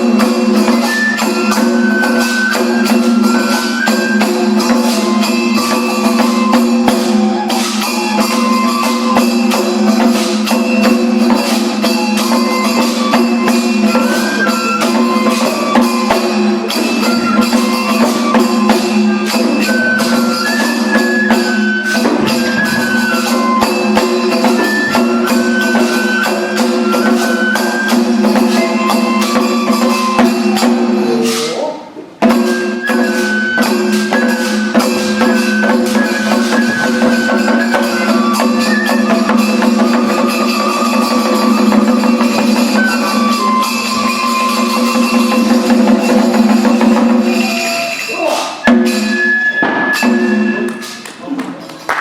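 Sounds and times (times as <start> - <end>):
high melody line: 0.0 - 31.4, 32.2 - 50.9
busy percussion strokes: 0.0 - 52.0.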